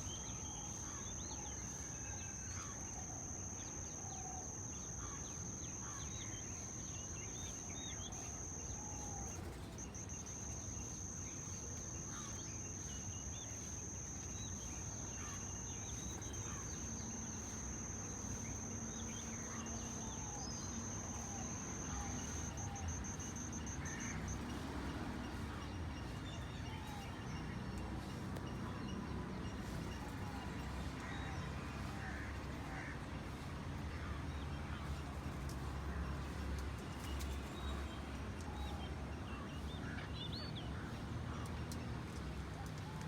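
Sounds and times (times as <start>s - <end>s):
insect high-pitched trill: 0.0s - 24.9s
bird chirps: 0.0s - 30.4s.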